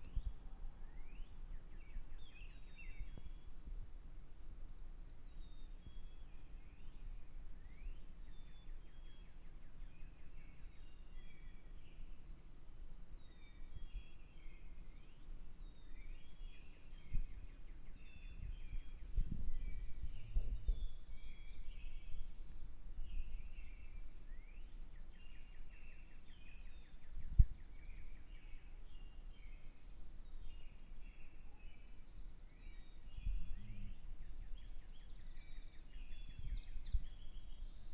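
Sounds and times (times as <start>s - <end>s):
small birds chirping and trilling: 13.2s - 37.9s.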